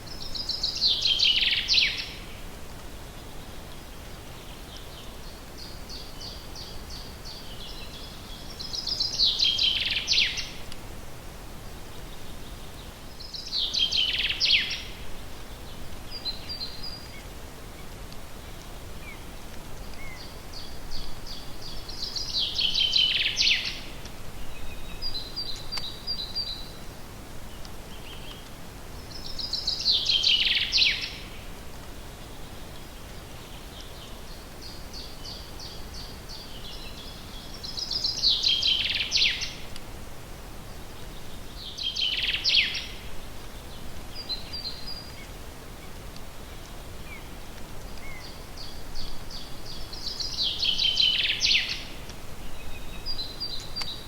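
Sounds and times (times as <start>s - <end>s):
songbird singing: 0.0s - 10.8s, 11.4s - 54.0s
steady background hiss: 0.0s - 54.0s.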